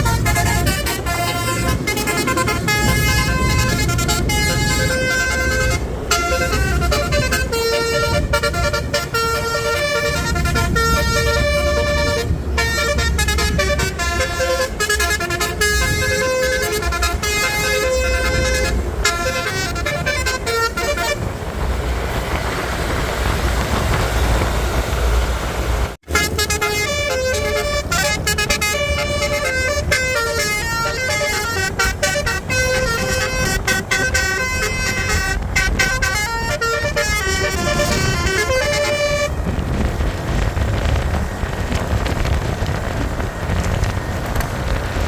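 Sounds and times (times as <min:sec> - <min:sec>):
multi-tone air horn tune: 0:00.0 - 0:21.4, 0:26.0 - 0:40.3
low rumble of bus engine: 0:00.0 - 0:45.0
rushing noise: 0:00.0 - 0:45.0.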